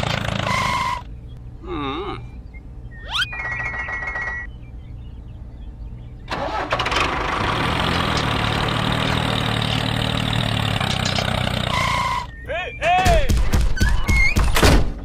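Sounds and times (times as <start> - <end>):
vehicle engine starting and idling: 6.2 - 12.2.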